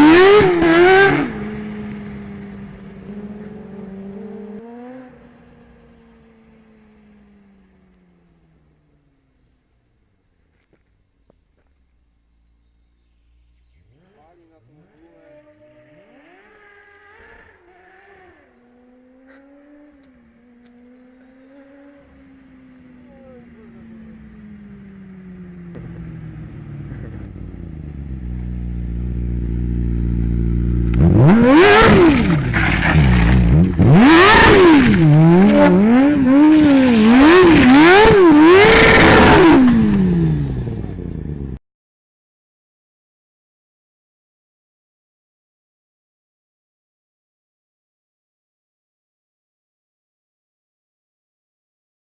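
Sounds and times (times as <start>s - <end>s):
engine running: 0.0s - 10.9s, 11.6s - 41.6s.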